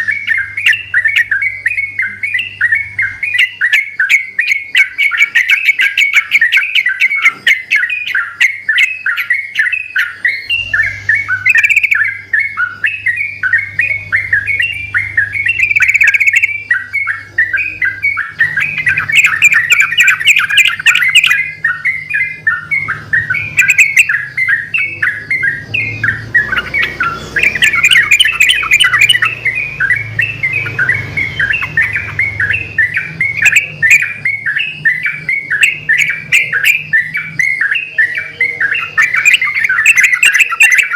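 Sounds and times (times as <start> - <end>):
birds chattering song: 0.0 - 40.9.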